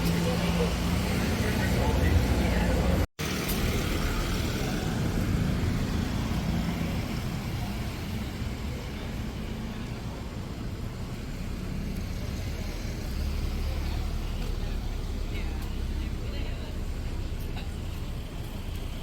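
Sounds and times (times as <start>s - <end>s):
street traffic hum: 0.0s - 19.0s.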